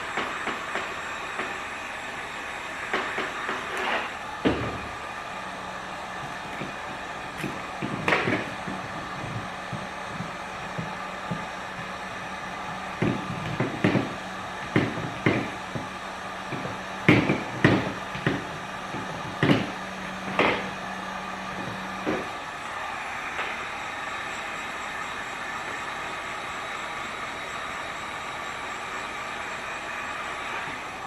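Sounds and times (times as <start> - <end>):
hard plastic knocking: 6.2 - 12.0, 12.7 - 20.7.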